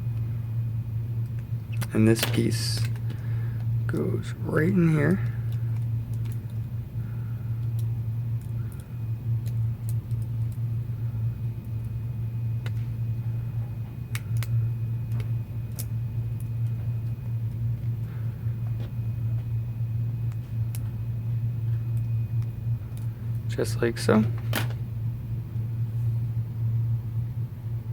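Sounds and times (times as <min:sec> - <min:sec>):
low electrical fan hum: 0:00.0 - 0:27.9
faint clicks of small parts: 0:01.2 - 0:04.0, 0:05.2 - 0:06.6, 0:07.6 - 0:10.6, 0:14.1 - 0:17.6.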